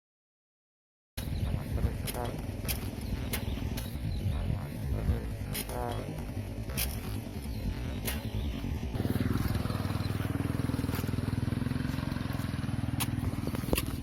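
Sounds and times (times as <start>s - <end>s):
engine running: 1.2s - 14.0s
sharp clicks: 7.8s - 8.4s.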